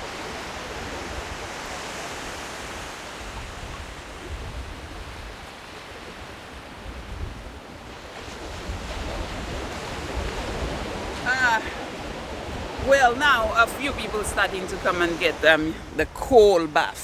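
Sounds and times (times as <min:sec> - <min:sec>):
wind rumble on microphone: 0:00.0 - 0:13.0
sea surf on beach: 0:00.0 - 0:17.0.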